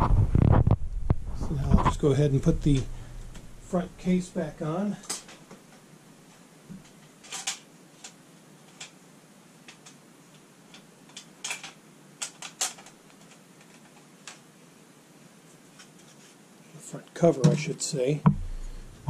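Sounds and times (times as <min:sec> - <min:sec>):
plastic cover clicks and clacks: 0:10.7 - 0:14.4.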